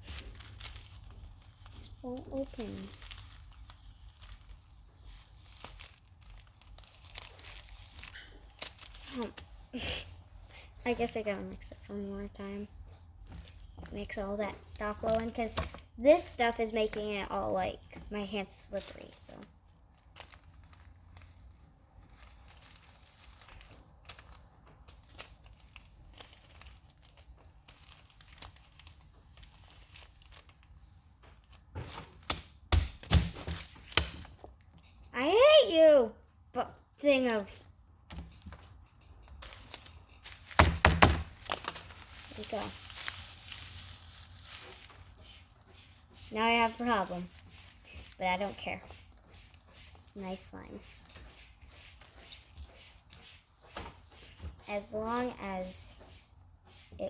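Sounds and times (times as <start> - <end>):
plastic packet crinkling: 0.0 - 10.3, 18.2 - 32.6, 38.4 - 45.7
small clicks and crackles: 0.0 - 35.2, 37.4 - 55.4.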